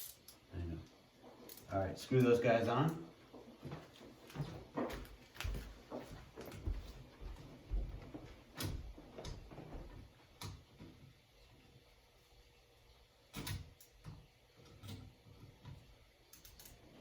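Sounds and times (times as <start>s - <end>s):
screwdriver clicking on screws: 16.3s - 16.8s.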